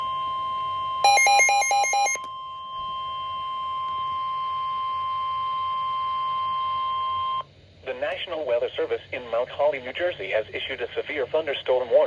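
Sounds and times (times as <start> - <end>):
steady high-pitched alarm tone: 1.0 - 2.2
rapid alternating beeps: 1.1 - 2.2.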